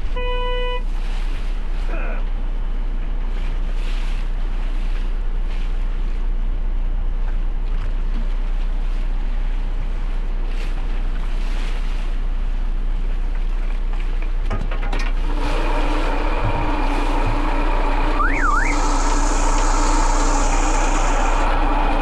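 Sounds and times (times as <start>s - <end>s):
boat engine running: 12.4s - 22.0s
water noise: 15.2s - 22.0s.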